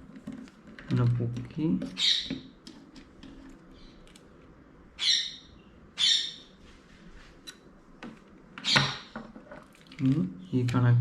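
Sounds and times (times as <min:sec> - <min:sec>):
bird calling harshly: 0:02.0 - 0:02.4, 0:05.0 - 0:06.5.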